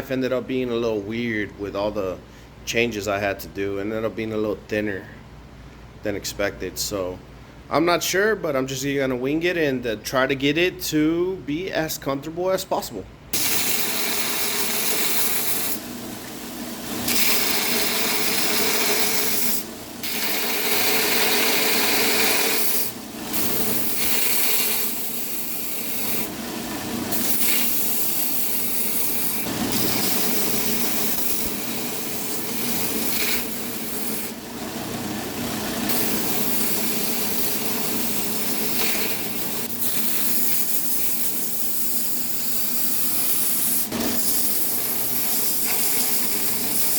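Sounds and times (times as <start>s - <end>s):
power sander grinding: 13.4s - 46.9s.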